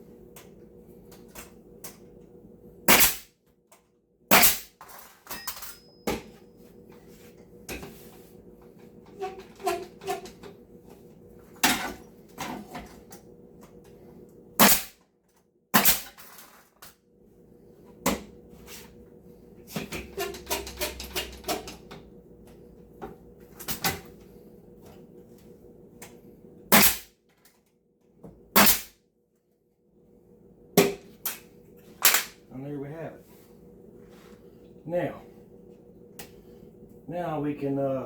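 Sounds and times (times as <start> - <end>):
nail gun firing: 2.9 - 3.3, 4.3 - 4.8, 14.6 - 15.0, 15.8 - 16.2, 26.7 - 27.1, 28.6 - 28.9.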